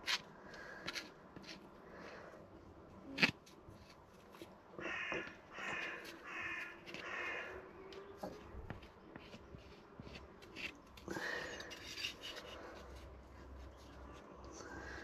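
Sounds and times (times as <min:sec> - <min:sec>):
crow cawing: 0:04.8 - 0:07.7.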